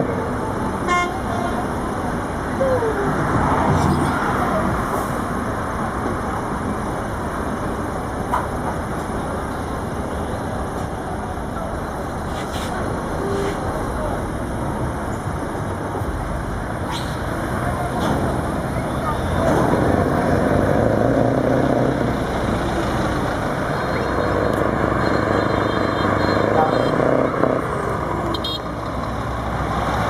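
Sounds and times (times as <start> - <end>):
truck diesel engines rumbling: 0.0 - 30.0
people talking: 0.5 - 5.2, 12.5 - 14.5, 17.3 - 20.0.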